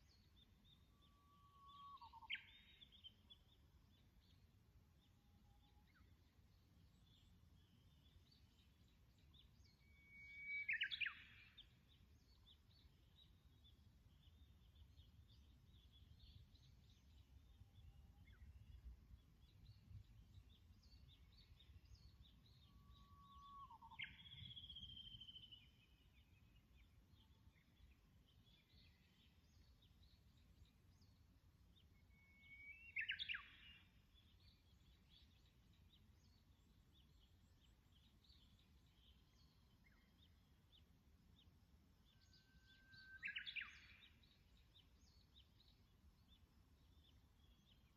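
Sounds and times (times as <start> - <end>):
faint bird chirping: 0.0 - 47.9
songbirds singing: 0.0 - 47.9
whistled bird phrase: 9.8 - 11.4.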